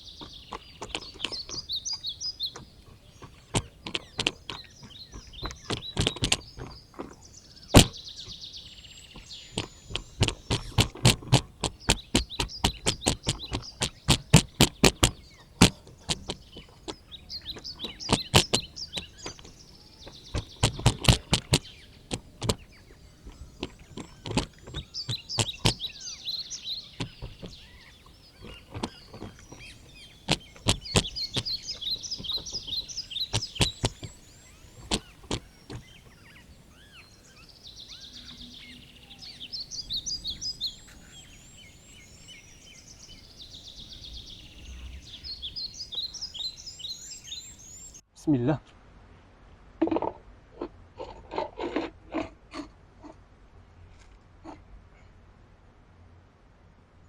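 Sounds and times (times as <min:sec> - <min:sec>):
birds chirping: 0:00.0 - 0:48.6
rapid sharp knocks: 0:09.6 - 0:16.8, 0:20.1 - 0:26.0, 0:28.4 - 0:34.2.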